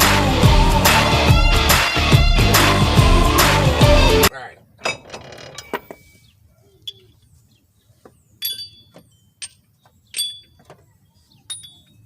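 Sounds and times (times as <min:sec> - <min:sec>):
metallic clinks and knocks: 0:04.8 - 0:06.2, 0:08.4 - 0:12.0.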